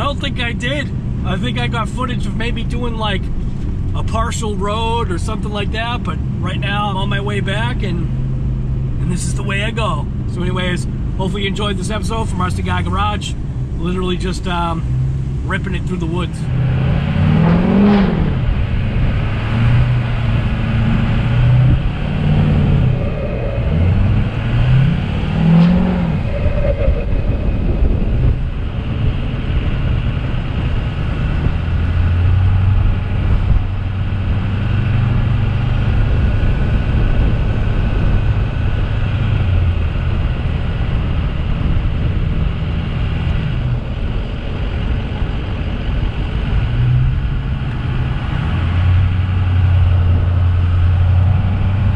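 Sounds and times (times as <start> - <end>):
vehicle engine running: 0.0 - 51.9.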